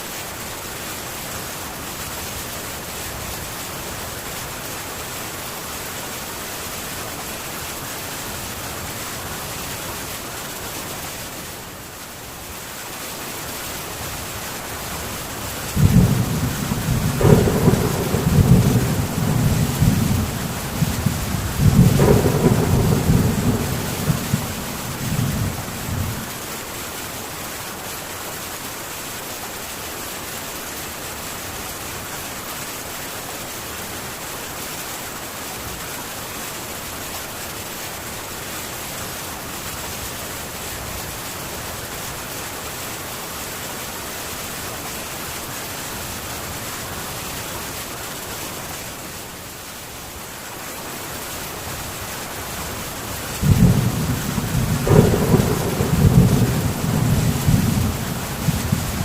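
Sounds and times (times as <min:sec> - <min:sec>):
heavy rain on a tin roof: 0:00.0 - 0:59.0
thunder rumbling: 0:15.7 - 0:26.4, 0:53.4 - 0:59.0.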